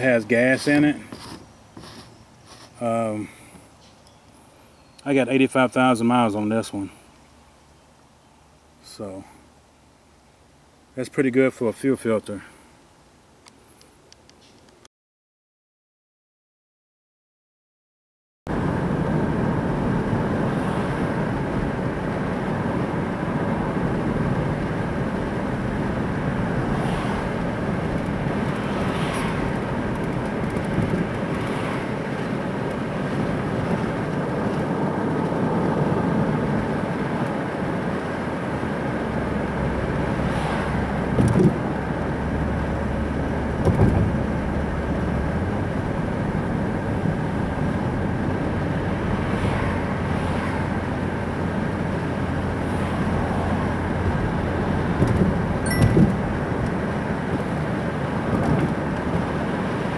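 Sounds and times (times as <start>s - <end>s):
car engine and road rumble: 0.0s - 14.9s, 18.5s - 59.9s
short thumps: 41.1s - 41.6s, 43.6s - 44.2s, 55.0s - 56.8s.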